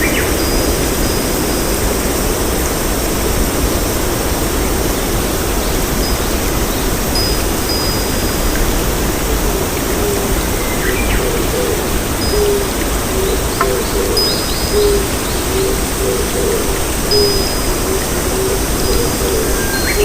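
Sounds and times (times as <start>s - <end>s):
rushing water: 0.0s - 20.0s
low hooting bird calls: 9.3s - 20.0s.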